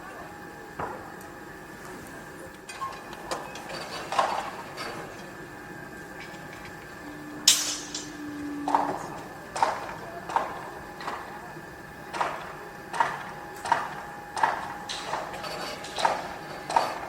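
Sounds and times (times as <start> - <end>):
steady machine hum: 0.0 - 17.0
metallic clanks and knocks: 7.5 - 8.8.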